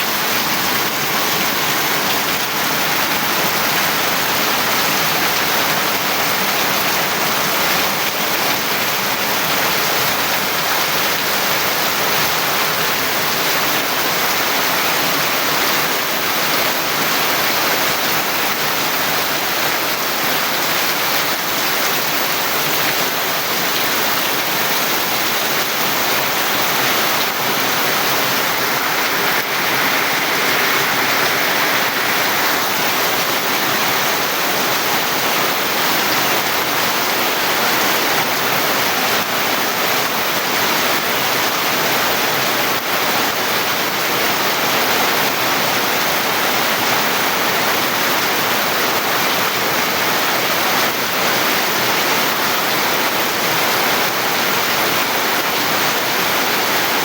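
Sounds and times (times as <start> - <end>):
steady rain falling: 0.0 - 57.0.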